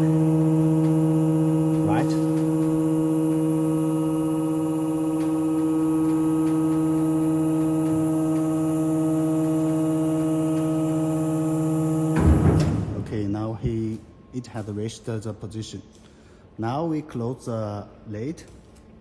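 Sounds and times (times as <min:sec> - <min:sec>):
hydraulic pump humming: 0:00.0 - 0:14.8.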